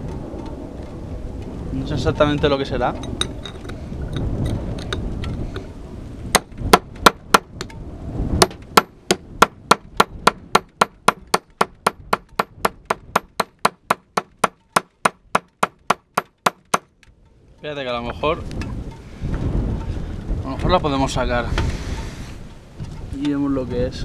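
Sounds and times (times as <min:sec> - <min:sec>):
wind rumble on microphone: 0:00.0 - 0:24.0
hammer striking chisel into rock: 0:06.4 - 0:07.6, 0:08.4 - 0:16.9.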